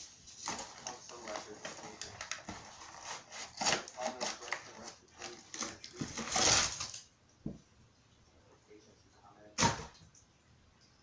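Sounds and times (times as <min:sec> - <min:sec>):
package rustling: 0:00.0 - 0:07.1
packages knocking and clicking: 0:00.4 - 0:07.6.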